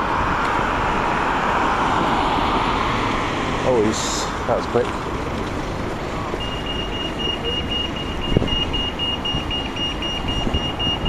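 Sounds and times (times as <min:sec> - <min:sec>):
road traffic noise: 0:00.0 - 0:11.0
crossing signal beeping: 0:06.2 - 0:11.0.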